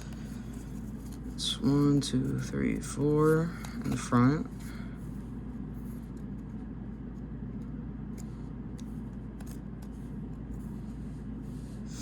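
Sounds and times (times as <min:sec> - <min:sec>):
steady low hum: 0:00.0 - 0:12.0
trading cards clicking and tapping: 0:08.1 - 0:10.4.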